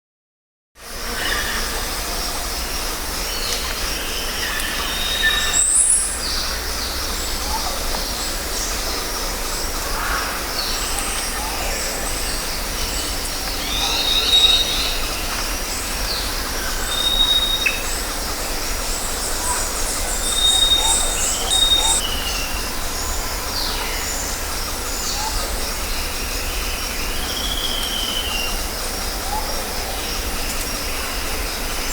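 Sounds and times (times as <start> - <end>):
insects chorus: 0.8 - 31.9
bird chirps and calls: 19.2 - 22.6.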